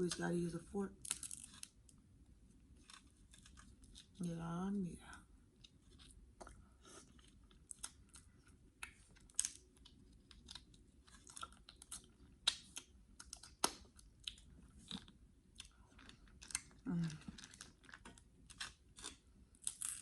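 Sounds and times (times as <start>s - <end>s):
crab shells cracking: 1.0s - 2.0s, 7.5s - 20.0s
chewing: 5.5s - 20.0s.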